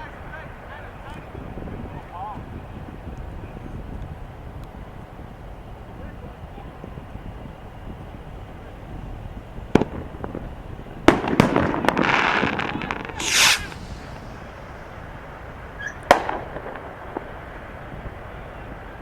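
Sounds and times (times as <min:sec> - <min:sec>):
firework bangs: 0:11.1 - 0:18.3
firework crackling: 0:11.1 - 0:19.0
firework hissing burst: 0:12.7 - 0:17.7.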